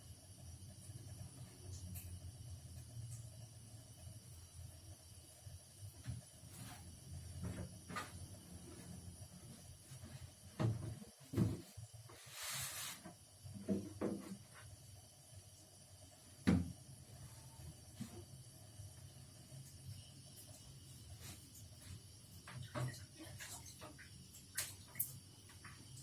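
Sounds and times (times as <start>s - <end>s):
objects knocking and clunking: 10.5s - 11.8s, 13.6s - 14.4s.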